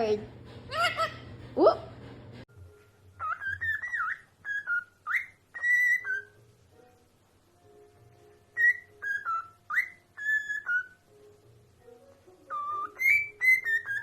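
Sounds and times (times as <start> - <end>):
parrot whistling: 0.7 - 1.3, 3.2 - 6.4, 8.5 - 11.1, 12.4 - 14.0.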